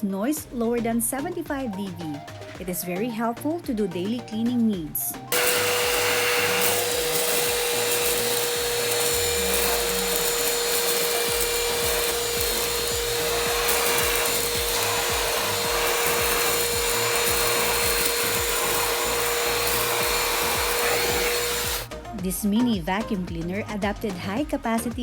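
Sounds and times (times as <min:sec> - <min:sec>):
handheld vacuum cleaner running: 0:05.3 - 0:21.9.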